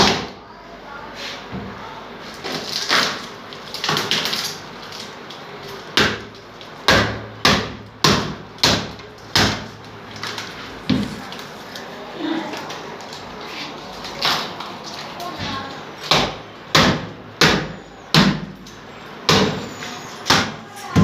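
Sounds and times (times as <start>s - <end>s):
scraping and handling noise: 9.0s - 16.0s.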